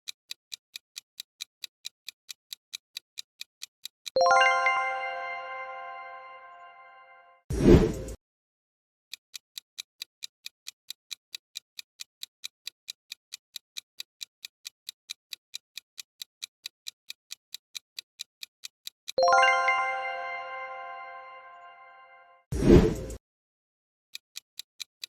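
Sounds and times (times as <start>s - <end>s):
clock-like timer ticks: 0.0s - 4.8s, 9.1s - 21.7s, 24.1s - 25.0s
bell-like chime: 4.2s - 7.4s, 19.2s - 22.5s.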